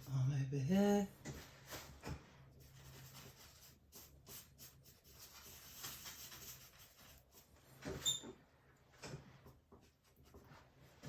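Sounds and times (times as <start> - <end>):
paintbrush scratching on canvas: 2.5 - 7.8.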